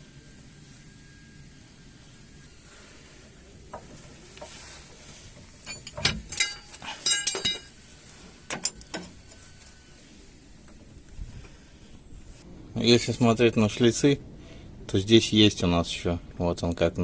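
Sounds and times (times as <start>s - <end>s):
metal tools clinking: 5.3s - 7.8s.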